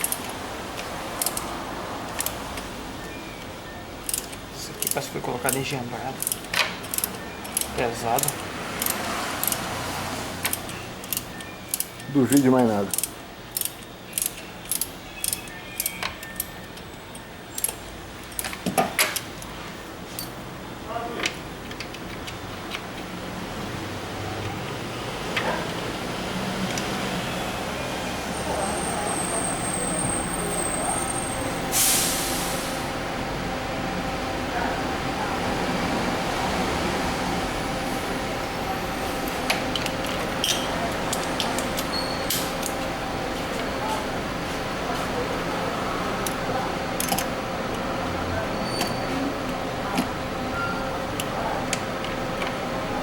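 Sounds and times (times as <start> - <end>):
hand tools clicking on metal: 0.0 - 1.5, 2.1 - 2.7, 4.0 - 9.7, 10.4 - 19.4, 39.5 - 42.8, 47.0 - 47.8
workshop hum: 0.0 - 53.0.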